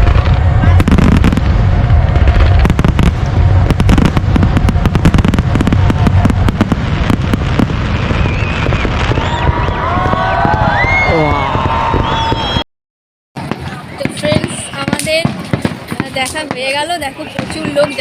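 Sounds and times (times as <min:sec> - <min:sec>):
continuous low rumble: 0:00.0 - 0:08.6
fireworks bangs: 0:00.0 - 0:12.6, 0:13.4 - 0:18.0.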